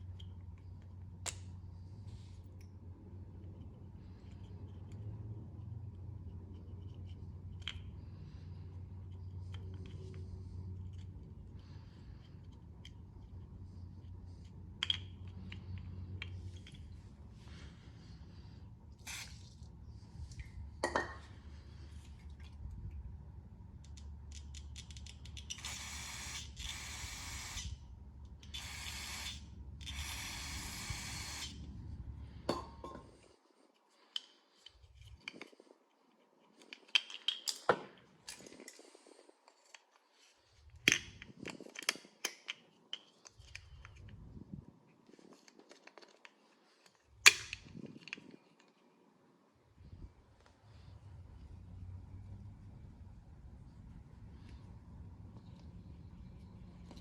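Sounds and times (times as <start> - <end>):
low steady hum: 0.0 - 37.2, 42.6 - 57.0
tools and small parts clicking: 23.8 - 31.6, 34.0 - 40.0, 40.6 - 44.2.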